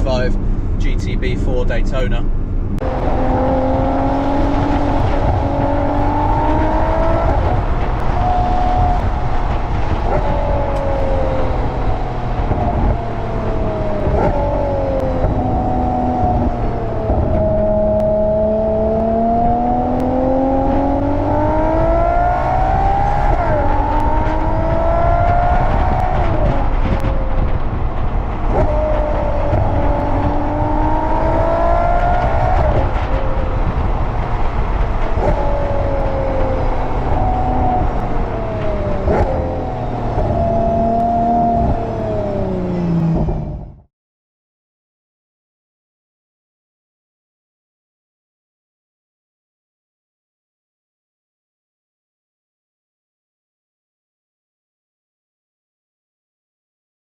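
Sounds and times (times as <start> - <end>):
sports car engine shifting gears: 0.0 - 43.9.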